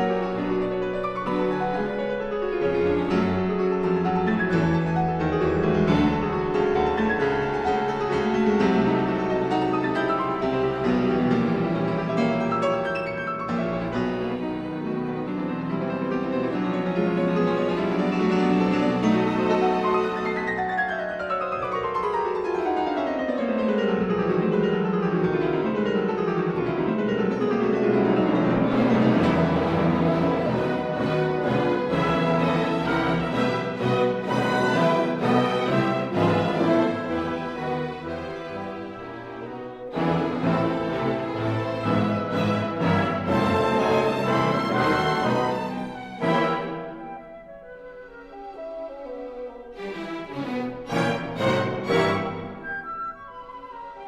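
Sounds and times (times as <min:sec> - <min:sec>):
classical keyboard piece: 0:00.0 - 0:54.0
piano music: 0:00.0 - 0:54.0.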